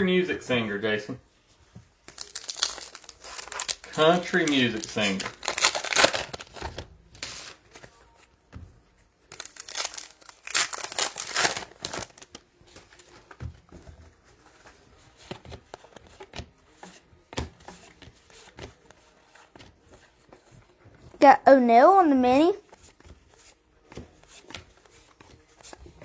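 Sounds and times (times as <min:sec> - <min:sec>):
cards rustling and clicking: 0:02.0 - 0:08.3, 0:09.2 - 0:21.2, 0:22.6 - 0:26.0
wrapper crinkling and tearing: 0:02.1 - 0:07.7, 0:09.3 - 0:13.1.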